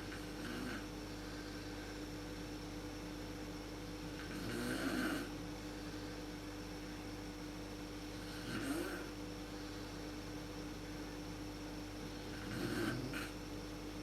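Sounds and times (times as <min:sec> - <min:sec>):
woman snoring: 0:00.0 - 0:00.9, 0:04.2 - 0:05.3, 0:08.2 - 0:09.2, 0:12.2 - 0:13.4
steady background hum: 0:00.0 - 0:14.0.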